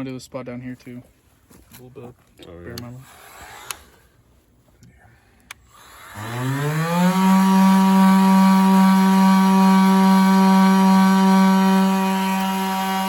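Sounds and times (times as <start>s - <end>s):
power sander whining: 2.9s - 4.1s, 5.5s - 13.0s.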